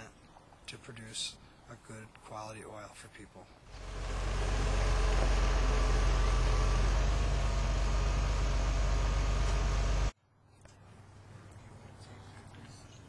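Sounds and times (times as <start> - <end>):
engine humming: 3.7 - 10.2.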